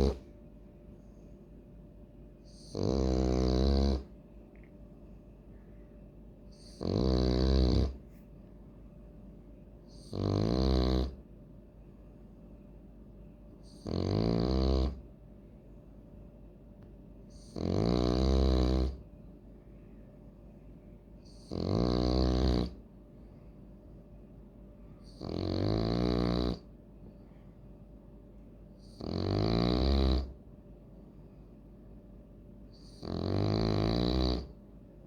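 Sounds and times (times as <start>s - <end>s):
dog snoring: 0.0s - 0.3s, 2.4s - 4.2s, 6.5s - 8.2s, 9.9s - 11.2s, 13.6s - 15.1s, 17.3s - 19.1s, 21.2s - 22.8s, 25.0s - 26.7s, 28.8s - 30.4s, 32.7s - 34.6s.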